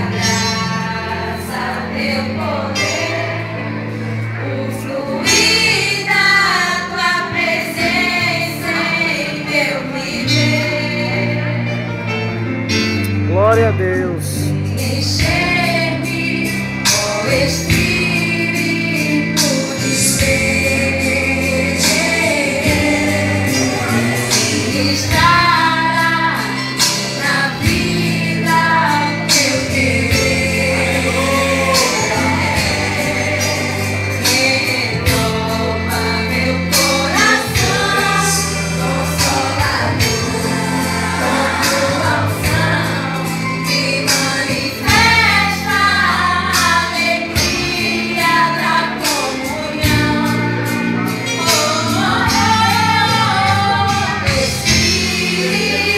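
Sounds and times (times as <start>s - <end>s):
women singing gospel song: 0.0s - 12.2s, 14.6s - 55.9s
held bass notes: 12.8s - 15.5s.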